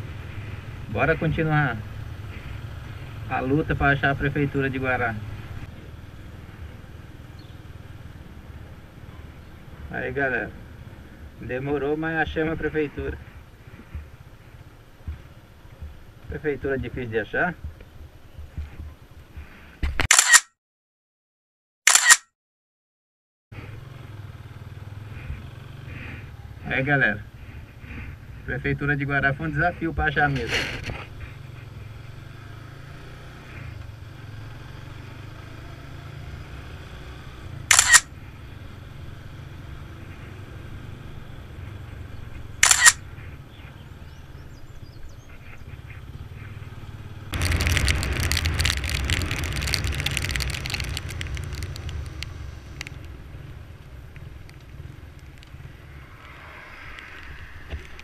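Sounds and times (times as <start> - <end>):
camera shutter clicks: 20.0 - 20.5, 21.9 - 22.3, 37.7 - 38.1, 42.6 - 43.0
loud rush with deep rumble: 47.3 - 58.0
steady low rumble: 47.3 - 58.0.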